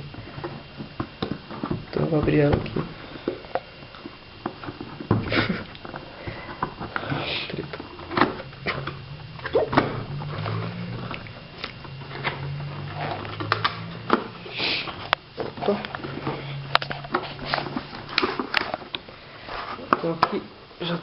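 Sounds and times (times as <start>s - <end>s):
low hum: 0.0s - 19.9s
cardboard box rustling and scraping: 6.1s - 18.9s.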